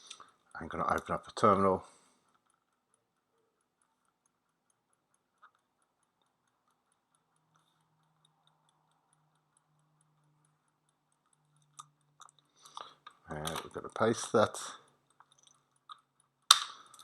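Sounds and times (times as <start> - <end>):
faint regular ticking: 0.0 - 17.0.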